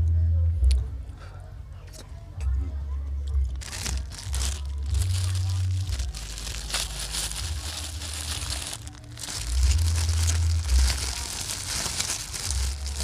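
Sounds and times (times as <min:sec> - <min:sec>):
music with heavy bass: 0:02.4 - 0:13.0
crunchy chewing: 0:03.5 - 0:13.0.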